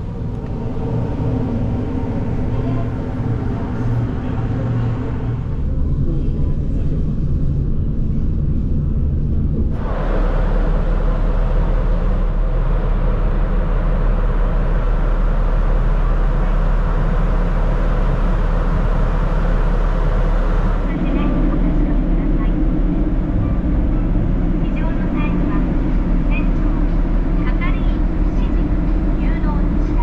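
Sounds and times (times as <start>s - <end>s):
deep hum: 0.0s - 30.0s
engine rumble and rushing: 0.0s - 30.0s.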